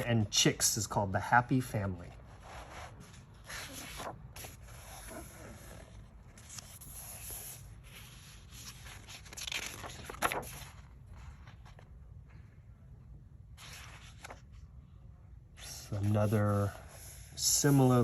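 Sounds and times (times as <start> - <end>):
book pages rustling: 2.3 - 12.5, 13.6 - 14.6
paper crinkle: 2.6 - 12.0, 13.6 - 14.6.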